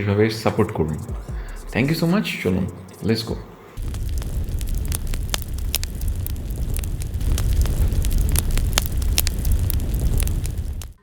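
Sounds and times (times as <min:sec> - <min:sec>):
crackling clicks: 0:03.8 - 0:11.0
wind buffeting microphone: 0:03.8 - 0:11.0.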